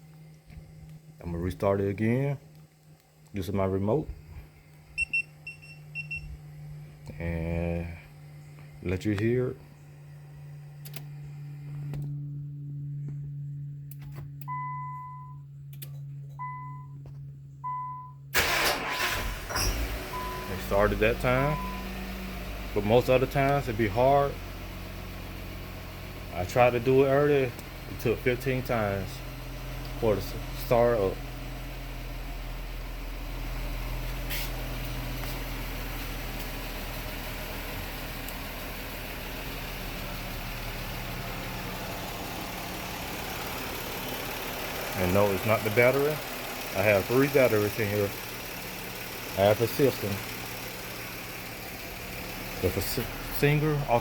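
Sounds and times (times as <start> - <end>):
steady low hum: 0.0 - 18.4
car engine idling: 0.0 - 54.0
electronic beeps: 5.0 - 6.3.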